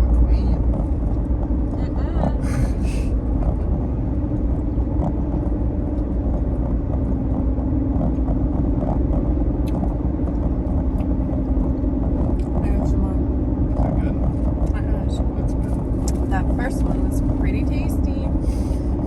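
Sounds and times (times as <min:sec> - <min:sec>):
car cabin engine rumble: 0:00.0 - 0:19.0.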